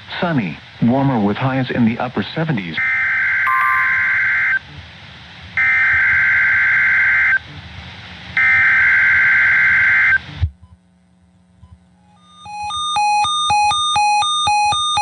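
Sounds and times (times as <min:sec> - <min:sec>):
screeching digital data tones: 0:03.5 - 0:04.5.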